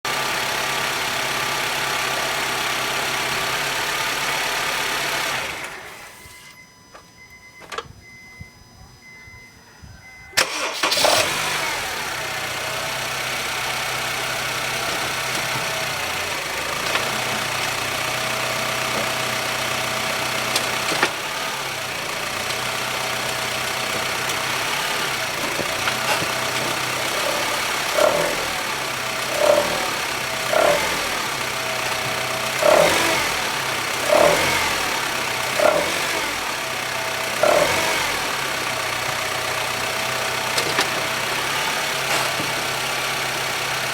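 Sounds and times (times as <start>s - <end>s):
car engine idling: 0.1s - 6.3s, 10.4s - 43.9s
car engine revving: 10.4s - 43.9s.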